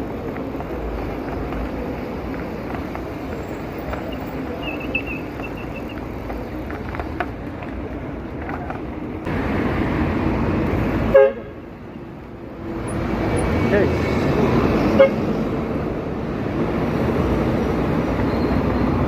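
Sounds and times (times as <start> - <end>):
city traffic noise: 0.0 - 19.0
car horn toot: 11.1 - 11.5, 15.0 - 15.2.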